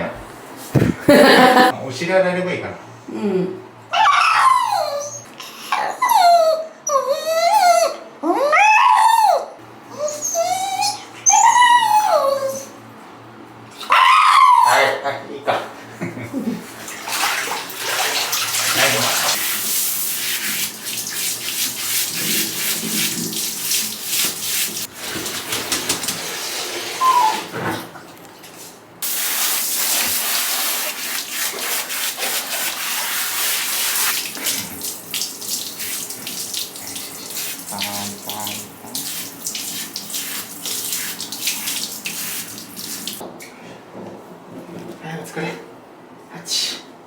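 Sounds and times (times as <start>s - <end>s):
water splashing in a bathtub: 16.5s - 43.2s.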